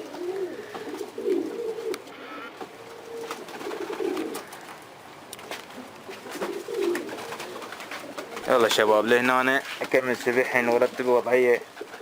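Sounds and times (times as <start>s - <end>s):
pigeons cooing: 0.0s - 5.0s, 5.7s - 9.1s, 11.6s - 12.0s.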